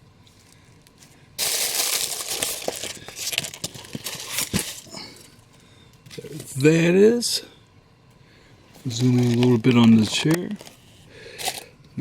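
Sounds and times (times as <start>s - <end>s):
packaging rustling and crinkling: 0.9s - 5.3s.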